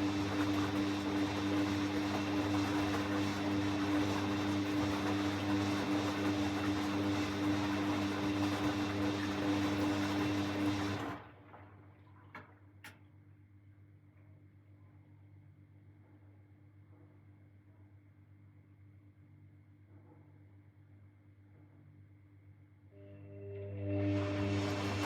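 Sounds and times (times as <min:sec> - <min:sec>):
washing machine motor hum: 0:00.0 - 0:11.4, 0:23.0 - 0:25.0.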